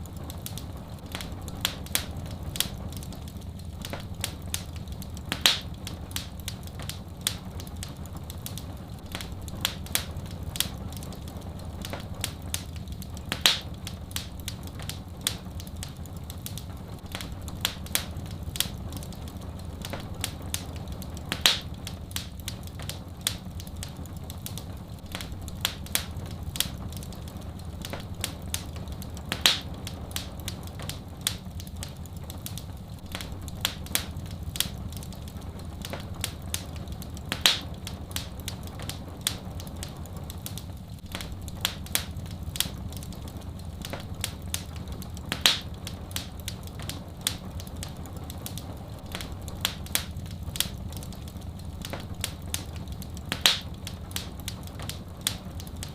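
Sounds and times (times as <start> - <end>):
steady low rumble: 0.0 - 55.9
wood fire crackling: 0.0 - 55.9
sharp pop of fire: 5.3 - 7.5, 13.3 - 15.5, 21.3 - 22.4, 29.3 - 31.5, 37.3 - 38.5, 45.3 - 47.4, 53.3 - 55.4.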